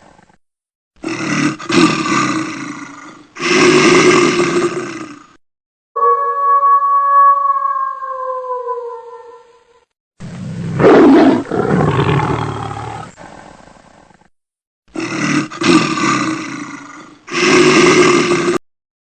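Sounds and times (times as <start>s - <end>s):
animal roaring: 1.0s - 5.4s, 6.0s - 9.5s, 10.5s - 13.4s, 14.9s - 18.6s.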